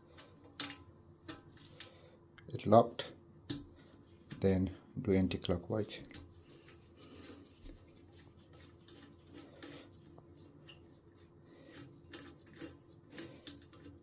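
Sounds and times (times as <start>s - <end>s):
faint metallic clicks and scrapes: 0.0s - 2.5s, 5.9s - 14.0s.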